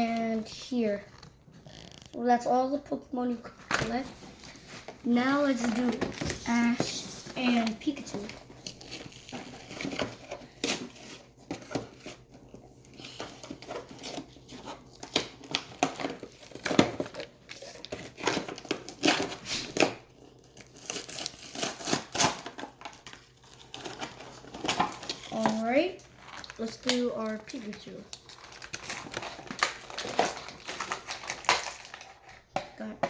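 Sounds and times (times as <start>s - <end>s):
packaging crinkling and tearing: 0.0s - 2.3s, 3.2s - 32.6s.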